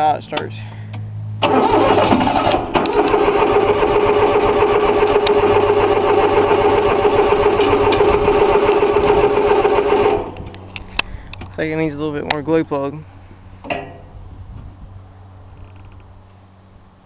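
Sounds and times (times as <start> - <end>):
diesel engine cranking: 0.3 - 11.6.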